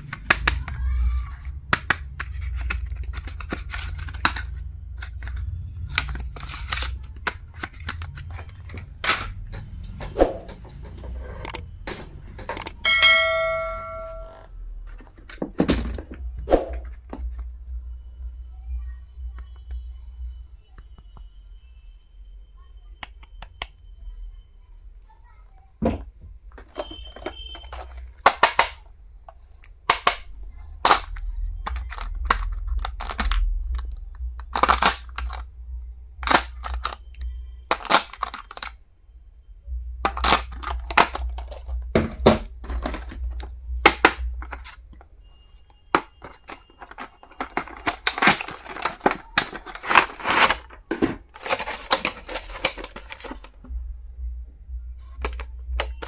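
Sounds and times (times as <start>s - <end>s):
plastic wrapping crinkling: 2.0s - 9.4s, 36.2s - 38.8s, 40.1s - 45.2s, 45.9s - 53.7s.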